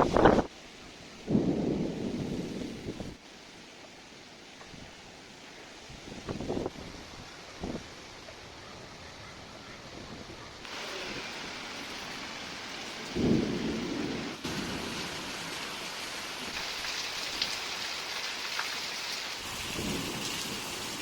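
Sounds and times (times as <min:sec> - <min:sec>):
steady rain falling: 0:00.0 - 0:21.0
raindrop ticks: 0:16.5 - 0:19.2.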